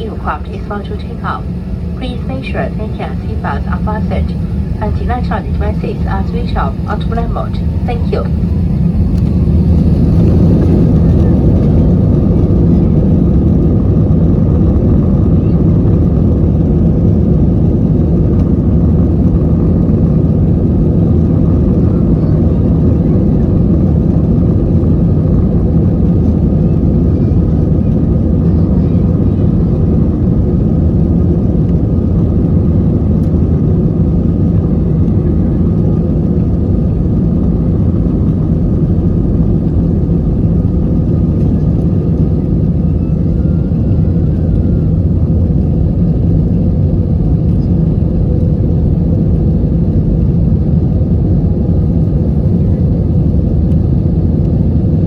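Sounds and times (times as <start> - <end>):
rushing air in cabin: 0.0 - 50.0
jet engine drone: 0.0 - 55.0
low hum: 0.0 - 55.0.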